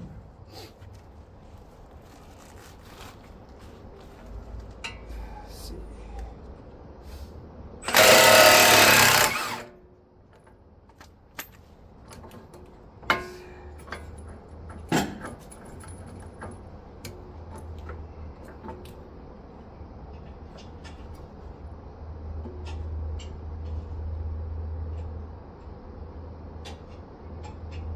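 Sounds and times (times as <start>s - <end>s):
impact wrench hammering: 7.8s - 9.7s.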